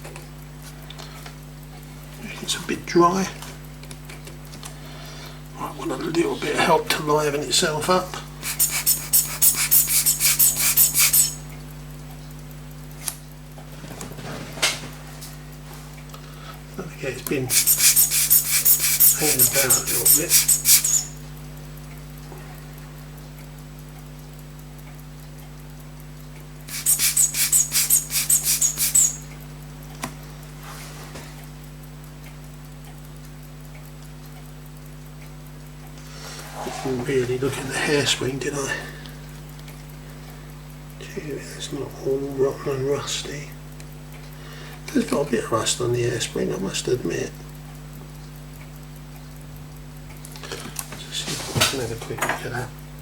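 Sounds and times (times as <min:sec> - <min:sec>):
steady low hum: 0:08.3 - 0:12.0, 0:17.0 - 0:22.0, 0:26.5 - 0:29.8
scratchy rubbing strokes: 0:08.4 - 0:11.4, 0:17.5 - 0:21.1, 0:26.7 - 0:29.2
squeaky air blower puffs: 0:08.4 - 0:11.4, 0:17.5 - 0:21.2, 0:26.7 - 0:29.2.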